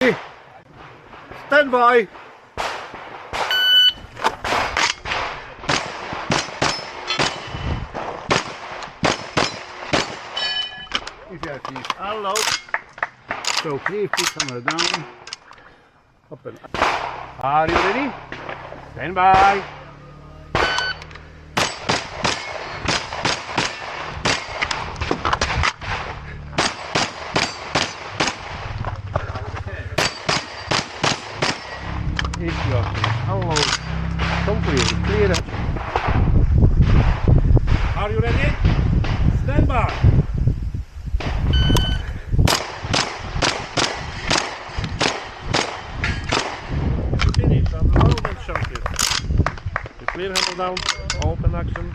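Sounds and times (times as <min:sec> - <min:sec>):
gunshots: 0:00.0 - 0:03.6, 0:04.3 - 0:10.4, 0:16.6 - 0:40.1, 0:42.5 - 0:46.9
shot timer beeps: 0:03.5 - 0:04.0, 0:41.5 - 0:42.0
steel targets ringing: 0:10.3 - 0:11.0, 0:20.5 - 0:22.9, 0:30.0 - 0:32.0, 0:33.2 - 0:35.2.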